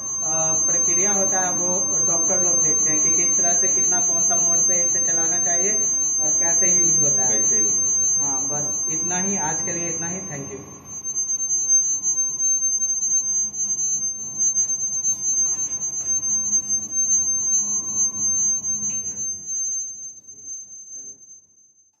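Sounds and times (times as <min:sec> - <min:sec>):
low machine hum: 0:00.0 - 0:21.6
high-pitched electronic whine: 0:00.0 - 0:22.0.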